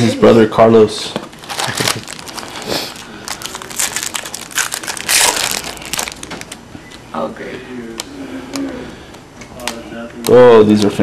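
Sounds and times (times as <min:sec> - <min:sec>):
wrapper tearing and crinkling: 0:01.3 - 0:06.6.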